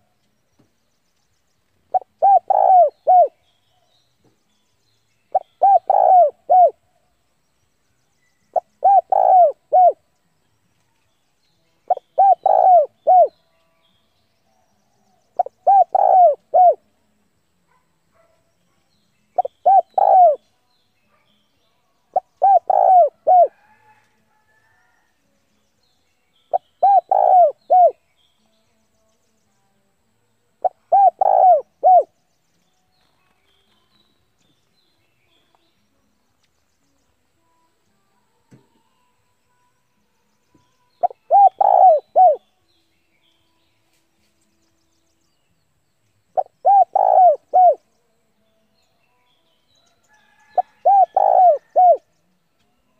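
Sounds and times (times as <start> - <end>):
dove cooing: 1.9 - 3.4, 5.3 - 6.8, 8.6 - 10.0, 11.9 - 13.3, 15.4 - 16.8, 19.4 - 20.4, 22.2 - 23.6, 26.5 - 28.0, 30.6 - 32.1, 41.0 - 42.4, 46.4 - 47.8, 50.6 - 52.0.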